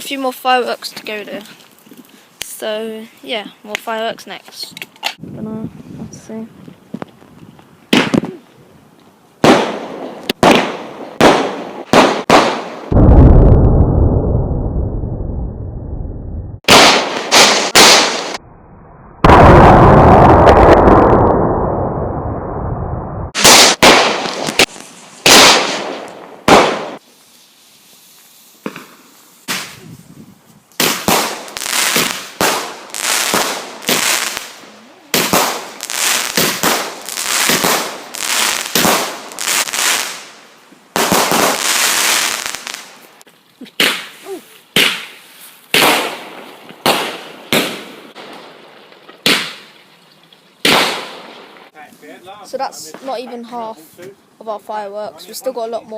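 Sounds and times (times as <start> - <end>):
fireworks bangs: 7.9 - 8.4, 9.4 - 13.8, 16.6 - 18.4, 19.2 - 22.5, 23.3 - 27.0, 28.6 - 29.9, 30.8 - 43.0, 44.8 - 49.8, 50.6 - 51.8
big firework boom: 10.4 - 24.7.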